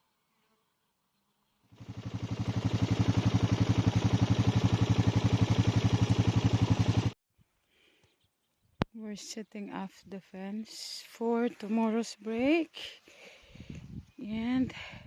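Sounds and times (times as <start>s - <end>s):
engine starting and pulsing: 1.8s - 7.2s.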